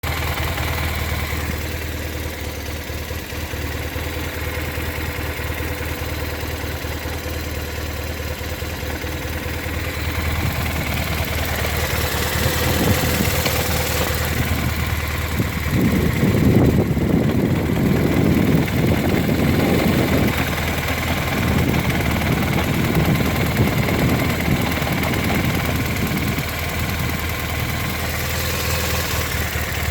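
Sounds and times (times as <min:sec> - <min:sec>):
motorcycle engine idling: 0:00.0 - 0:29.9.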